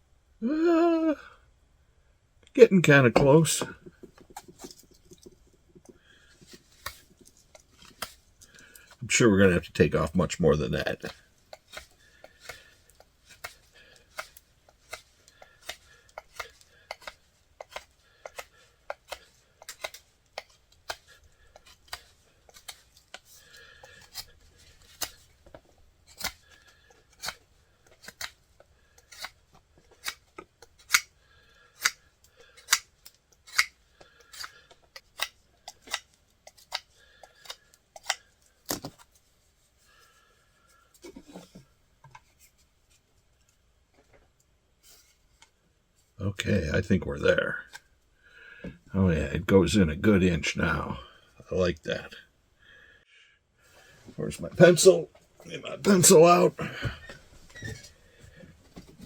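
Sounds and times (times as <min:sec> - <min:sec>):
knife whittling wood: 0:03.2 - 0:39.1.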